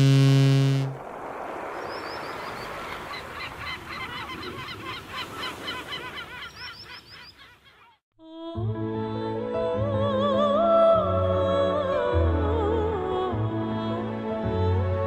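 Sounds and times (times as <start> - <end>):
birds honking: 2.6 - 8.0.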